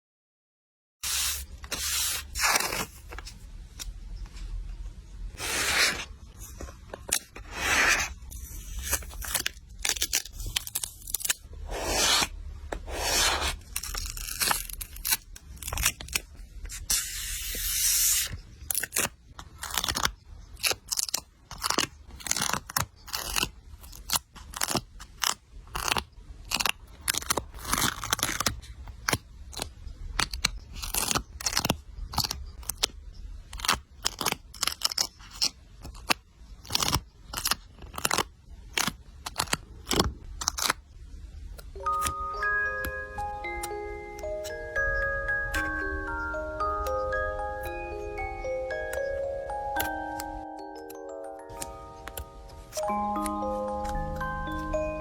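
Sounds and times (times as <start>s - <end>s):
paper tearing: 1.0s - 3.2s, 5.4s - 6.1s, 7.2s - 20.1s
paper rustling: 1.0s - 3.4s, 5.4s - 15.0s
rubbing and scraping on paper: 1.0s - 3.4s, 5.4s - 9.5s, 10.3s - 15.1s, 16.6s - 19.1s
scissors snipping paper: 5.4s - 40.8s.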